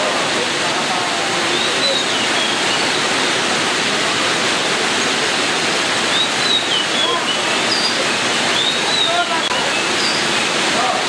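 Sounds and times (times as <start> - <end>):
lovebirds chattering: 1.5 - 3.0, 6.1 - 11.0.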